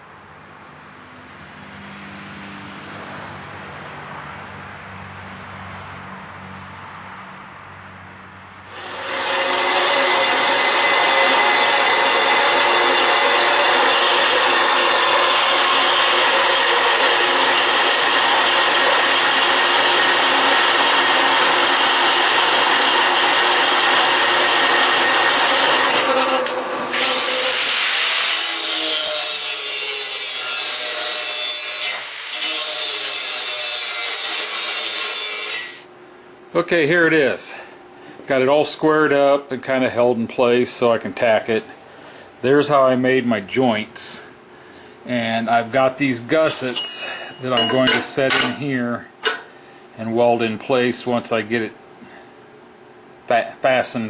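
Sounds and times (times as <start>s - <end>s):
power tool cutting metal: 8.7s - 35.9s.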